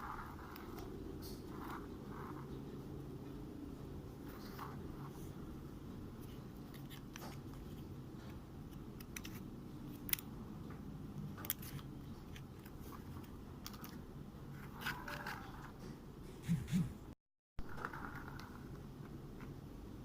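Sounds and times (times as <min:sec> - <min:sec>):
toy scraping: 0:00.0 - 0:02.8, 0:14.6 - 0:15.8
low background hum: 0:00.0 - 0:20.0.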